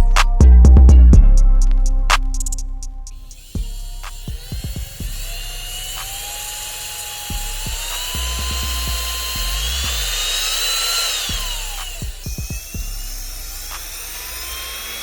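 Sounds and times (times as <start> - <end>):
background music with beat: 0.0 - 15.0
small motor whining: 3.0 - 15.0.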